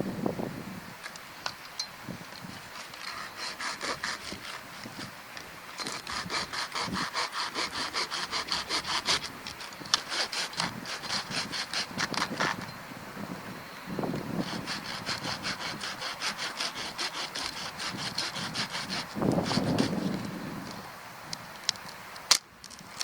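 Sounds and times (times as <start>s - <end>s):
hand saw cutting wood: 2.5s - 5.1s, 5.8s - 12.6s, 14.2s - 20.2s.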